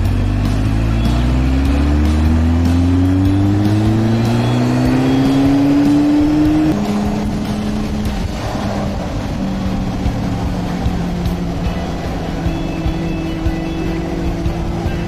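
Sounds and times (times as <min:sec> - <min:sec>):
motorcycle engine accelerating: 0:00.0 - 0:15.0
wind noise on microphone: 0:06.0 - 0:13.8.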